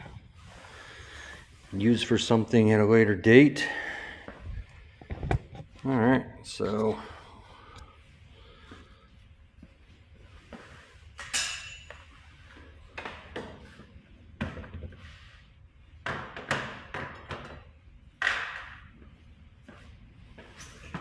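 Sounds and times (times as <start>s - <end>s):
metal tools clinking and knocking: 11.2s - 11.9s.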